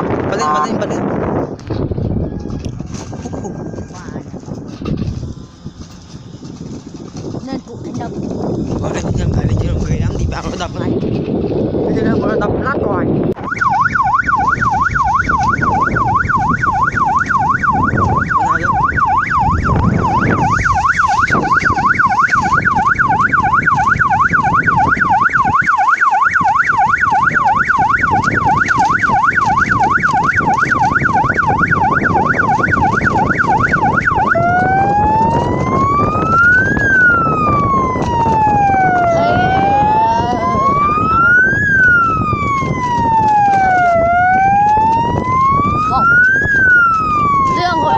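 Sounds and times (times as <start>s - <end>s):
electronic police siren: 0.0s - 4.3s, 13.4s - 47.9s
low rumble: 0.0s - 25.6s, 26.6s - 47.9s.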